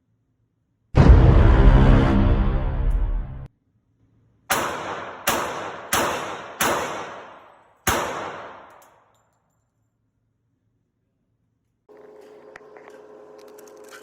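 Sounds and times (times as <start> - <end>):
gunshots: 4.5 - 8.9.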